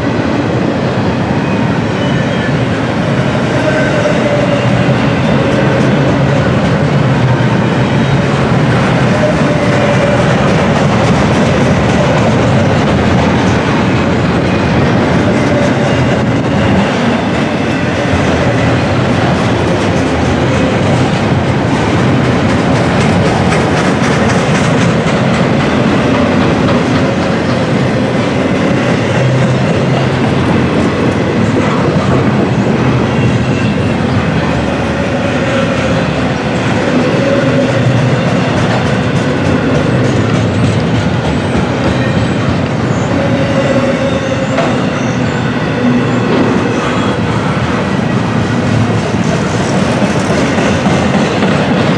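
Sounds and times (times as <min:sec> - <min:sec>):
freight train cars rolling: 0:00.0 - 0:51.9
wheels clicking over rail joints: 0:18.1 - 0:33.5.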